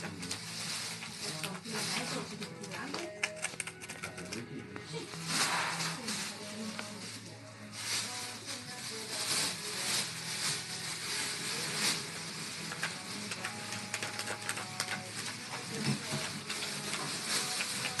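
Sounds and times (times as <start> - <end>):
paper crackling and tearing: 0.0 - 4.4, 5.2 - 18.0.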